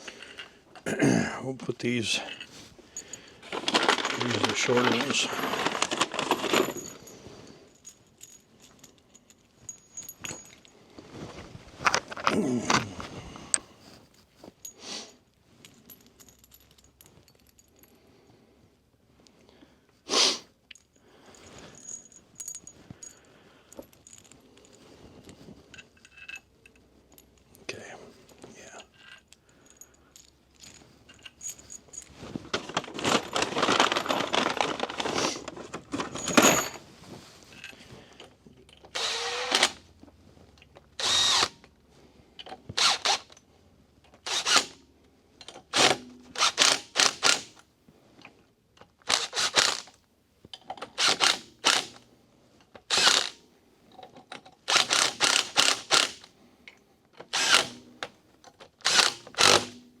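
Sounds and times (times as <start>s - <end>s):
power drill-driver bursts: 38.9s - 39.8s, 41.0s - 41.6s, 42.8s - 43.3s, 44.2s - 44.8s, 45.7s - 47.5s, 49.1s - 49.9s, 51.0s - 52.0s, 52.9s - 53.4s, 54.7s - 56.3s, 57.3s - 57.9s, 58.8s - 59.8s.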